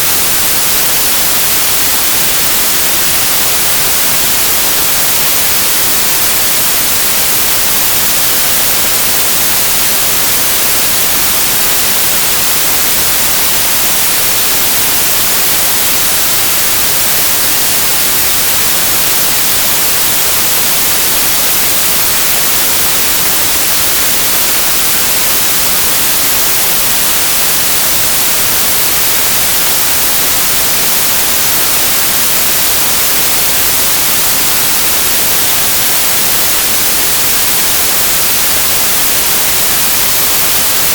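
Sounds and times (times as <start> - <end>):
white noise hiss: 0.0 - 40.9.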